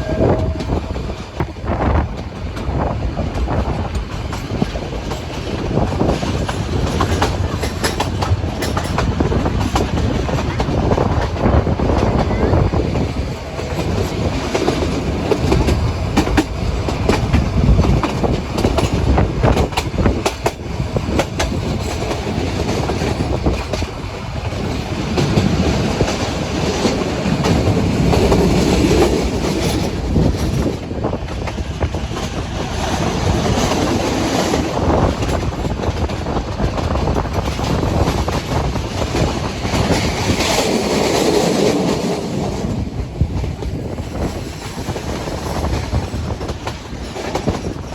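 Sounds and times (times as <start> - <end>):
train wheels clattering: 0.0 - 47.9.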